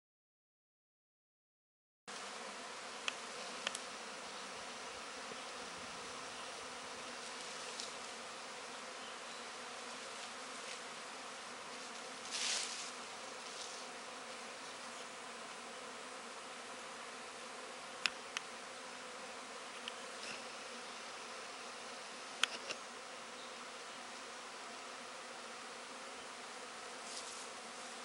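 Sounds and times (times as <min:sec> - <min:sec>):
bee swarm buzzing: 0:02.1 - 0:28.0
sharp clicks: 0:22.4 - 0:22.8.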